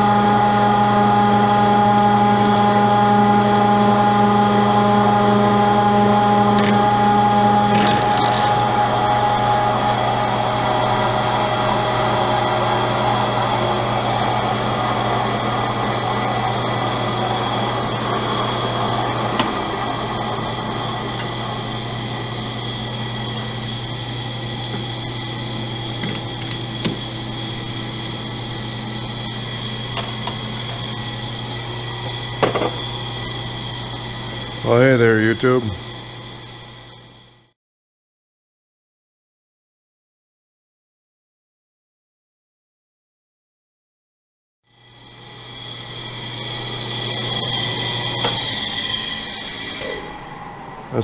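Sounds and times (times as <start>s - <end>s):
metal lathe motor hum and whine: 0.0s - 37.5s, 44.7s - 51.0s.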